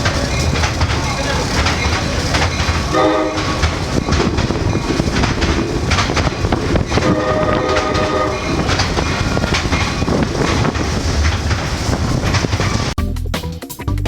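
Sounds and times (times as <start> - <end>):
low train rumble: 0.0 - 13.0
train wheels clicking on rails: 0.0 - 13.0
train horn blast: 2.8 - 4.0, 6.9 - 8.8.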